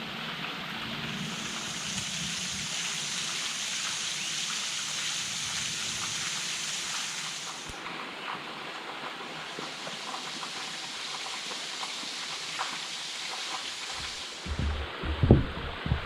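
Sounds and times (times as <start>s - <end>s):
waterfall rushing: 13.9s - 16.0s.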